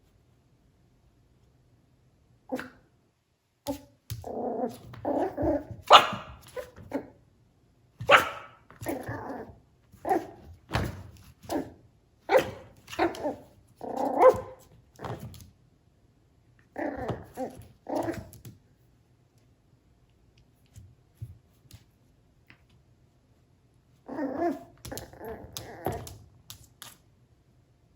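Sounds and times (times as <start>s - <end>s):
puppy yapping: 5.2s - 6.7s, 8.1s - 8.6s.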